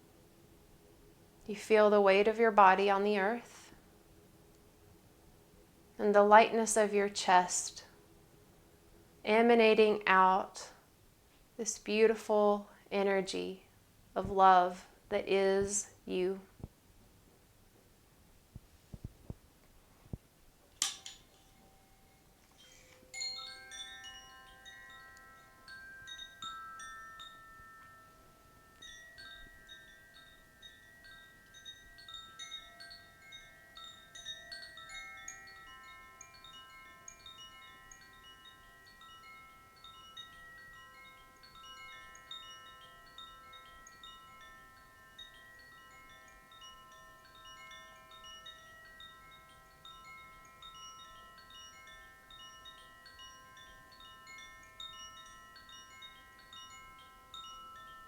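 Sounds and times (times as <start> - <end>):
wind chimes ringing softly: 20.8 - 58.0.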